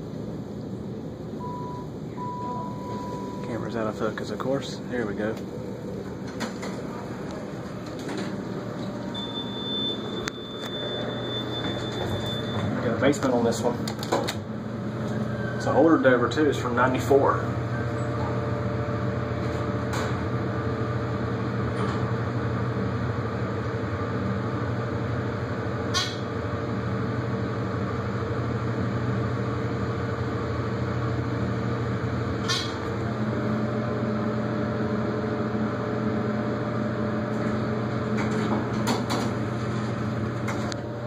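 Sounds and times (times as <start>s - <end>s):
elevator hum: 0.0s - 41.0s
elevator clicks: 6.2s - 12.7s.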